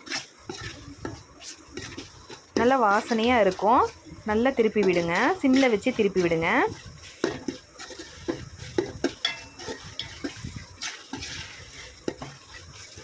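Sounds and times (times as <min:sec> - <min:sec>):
ladle scraping a pot: 0:00.0 - 0:13.0
light sizzle of frying: 0:00.0 - 0:13.0.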